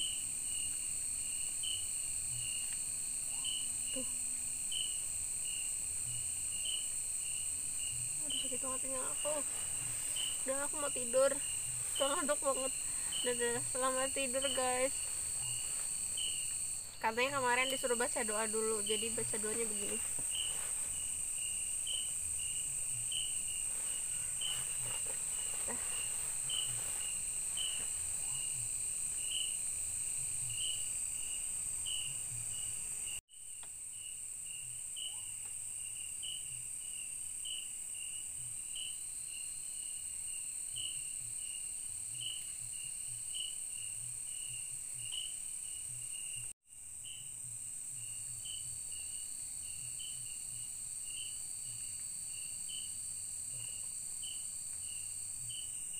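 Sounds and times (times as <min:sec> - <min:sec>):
high-pitched insect buzzing drone: 0:00.0 - 0:33.2
rhythmic insect chirping: 0:00.0 - 0:55.9.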